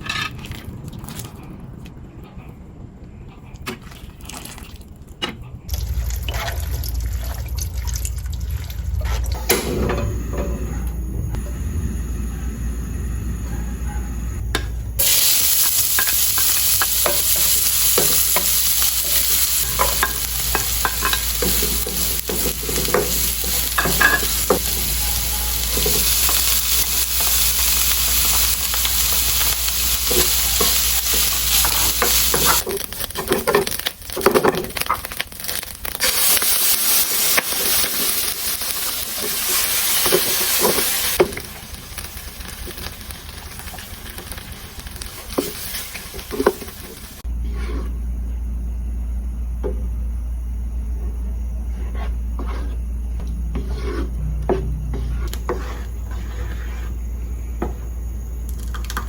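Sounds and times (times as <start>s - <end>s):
low steady hum: 0.6s - 33.2s, 47.2s - 59.0s
food sizzling in a pan: 15.0s - 47.2s
utensil scraping a pan: 51.7s - 52.8s, 53.5s - 57.0s.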